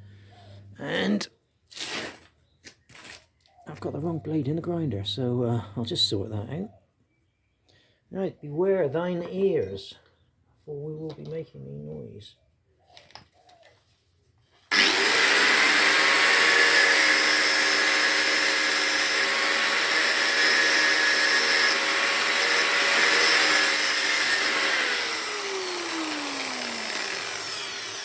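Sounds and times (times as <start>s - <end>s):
angle grinder cutting metal tube: 14.7s - 28.0s
grinder winding down: 14.7s - 28.0s.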